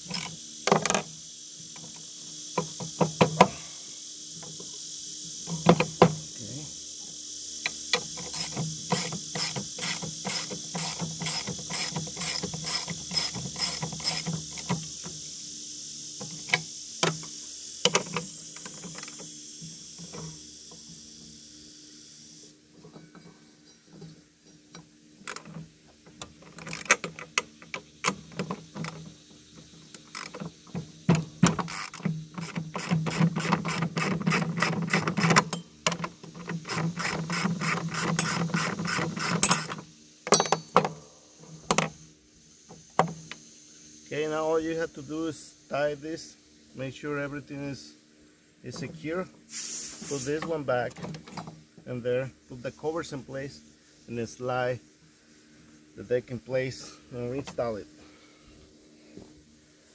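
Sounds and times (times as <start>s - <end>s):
ratchet wrench clicking: 0.0s - 1.0s, 7.6s - 15.0s, 26.5s - 28.2s, 29.9s - 30.4s, 31.5s - 39.8s.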